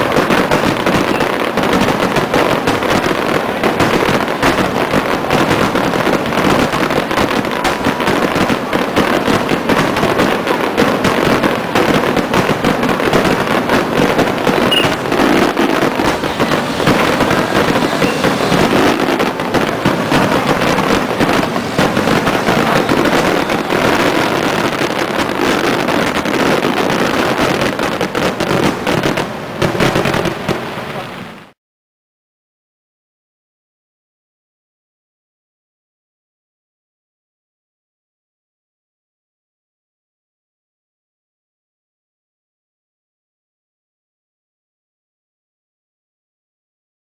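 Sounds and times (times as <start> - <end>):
fireworks bangs and crackles: 0.0 - 31.6.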